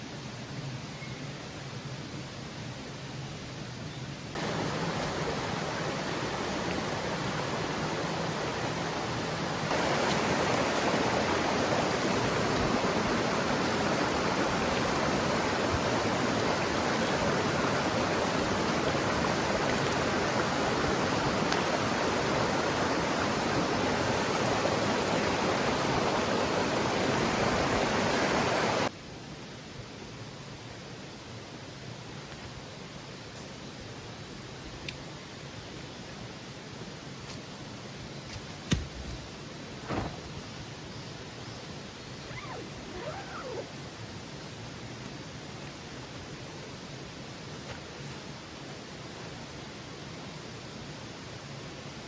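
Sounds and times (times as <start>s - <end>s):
creek rushing over rocks: 4.4s - 28.9s.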